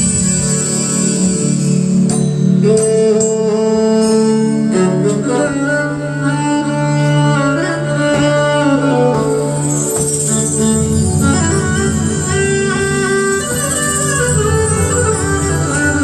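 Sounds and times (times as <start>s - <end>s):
sustained low drone: 0.0s - 2.6s, 10.6s - 16.0s
synthesizer melody: 8.2s - 16.0s.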